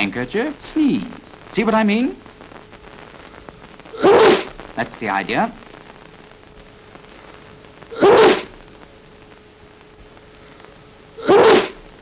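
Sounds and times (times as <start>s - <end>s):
faint steady hum: 0.0s - 12.0s
man sneezing: 4.0s - 4.5s, 8.0s - 8.5s, 11.2s - 11.8s.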